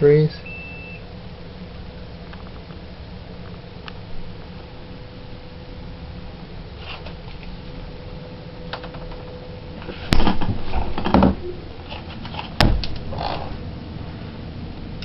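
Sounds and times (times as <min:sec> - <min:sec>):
faint steady hum: 0:00.0 - 0:15.0
loud knock: 0:12.6 - 0:12.9.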